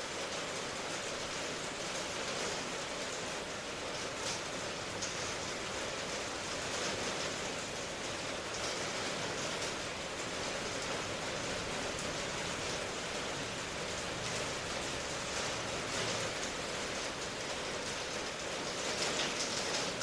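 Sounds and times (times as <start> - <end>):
steady rainfall: 0.0 - 20.0.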